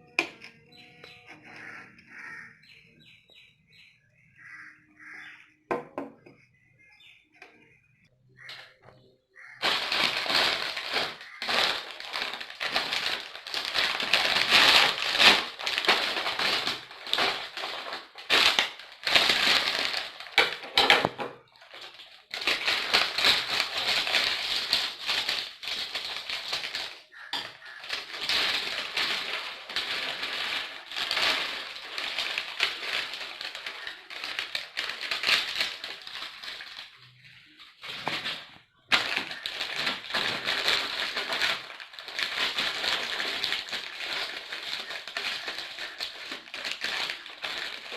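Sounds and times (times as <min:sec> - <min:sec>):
potato chips crunching: 0:09.4 - 0:20.3, 0:21.7 - 0:47.9.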